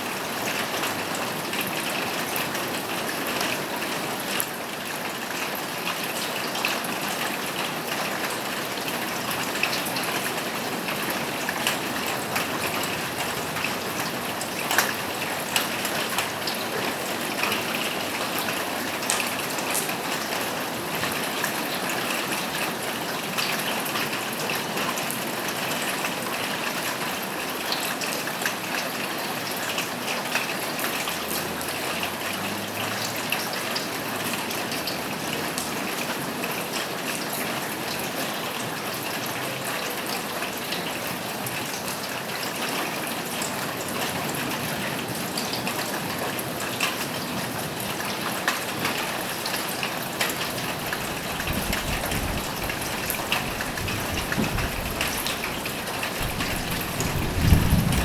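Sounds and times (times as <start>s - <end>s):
rain falling on a roof: 0.0s - 58.0s.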